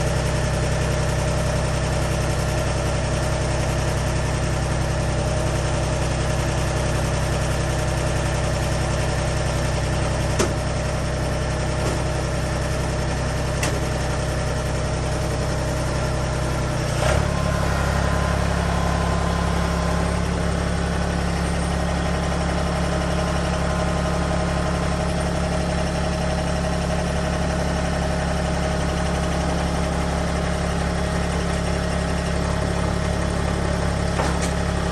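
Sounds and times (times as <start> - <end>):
sawmill engine running: 0.0 - 34.9.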